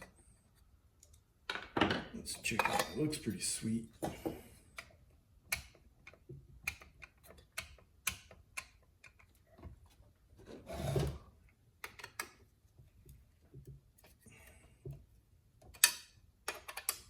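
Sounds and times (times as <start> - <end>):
tools and metal parts clicking: 15.7 - 17.0.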